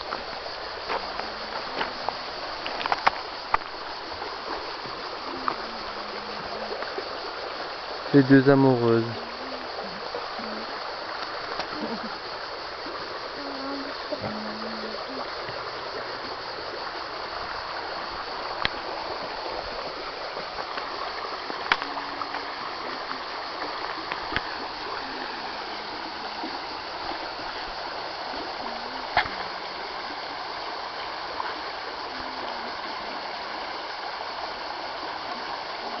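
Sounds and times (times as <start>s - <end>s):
river water flowing: 0.0s - 36.0s.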